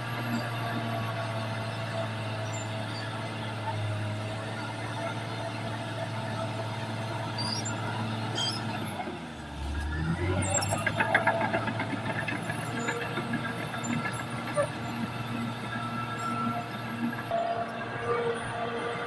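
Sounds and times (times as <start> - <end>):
bulldozer diesel engine running: 0.0 - 19.0
steel tracks squealing and clanking: 7.3 - 9.0, 10.2 - 19.0.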